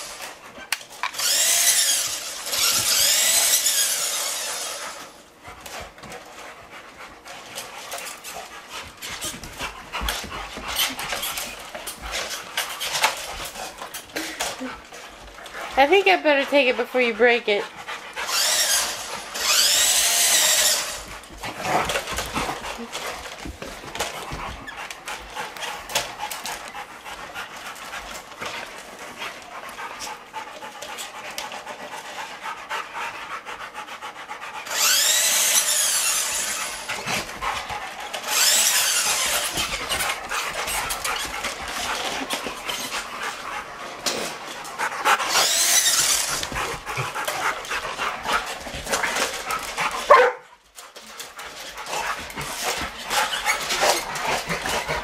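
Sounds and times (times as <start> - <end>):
dogs panting: 0.0 - 55.0
toy truck motor whining: 1.1 - 5.2, 18.2 - 21.1, 34.6 - 36.9, 38.2 - 40.2, 45.3 - 46.6.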